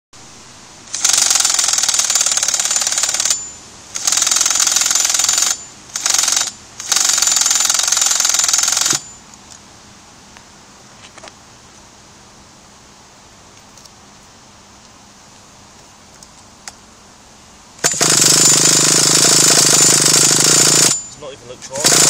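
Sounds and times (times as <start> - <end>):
starter cranking engine: 17.8 - 21.0, 21.7 - 22.0.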